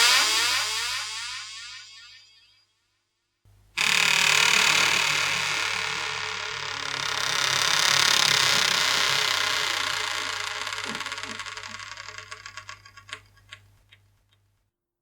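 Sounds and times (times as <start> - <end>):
door hinge creaking: 3.5 - 14.1.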